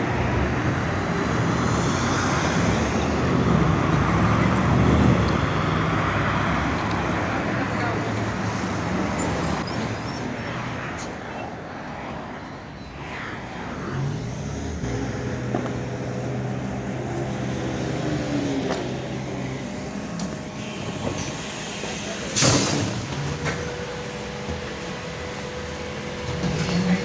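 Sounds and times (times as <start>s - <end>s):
trolleybus motor hum: 0.4s - 10.2s, 14.7s - 27.0s
compressed air hiss: 20.5s - 23.2s.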